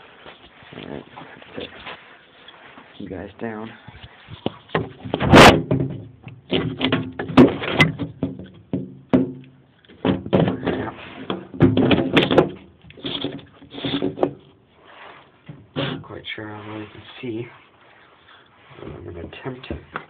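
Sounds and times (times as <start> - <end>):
handling knocks and rattles: 0.0 - 14.6.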